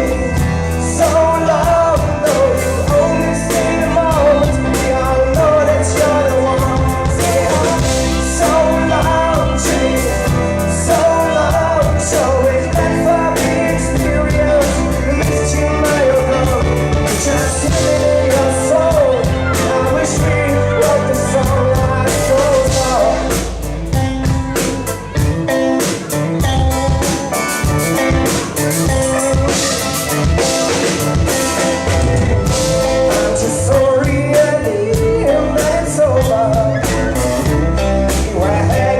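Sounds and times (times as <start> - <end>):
bass guitar: 0.0 - 38.9
drum kit: 0.0 - 38.9
guitar: 0.0 - 38.9
person singing: 0.0 - 38.9.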